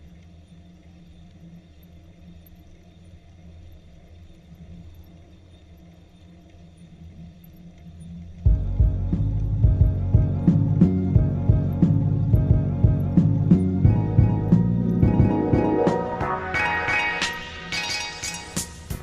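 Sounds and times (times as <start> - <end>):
vehicle engine rumble: 8.5 - 16.2
loud music: 8.5 - 19.0.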